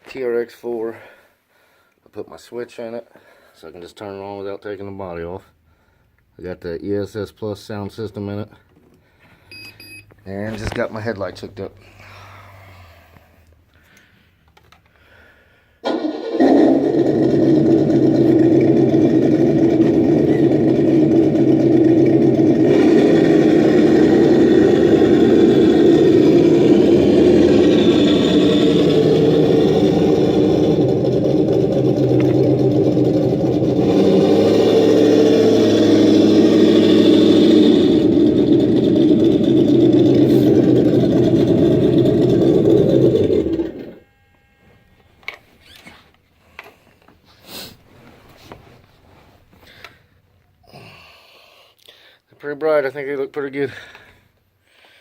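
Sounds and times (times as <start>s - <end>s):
simulated engine revving: 15.9s - 44.0s.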